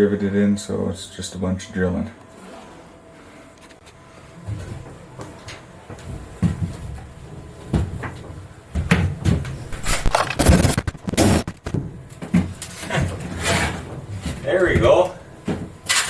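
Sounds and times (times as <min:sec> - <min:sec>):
floor panel knocking and scraping: 0:09.3 - 0:11.8.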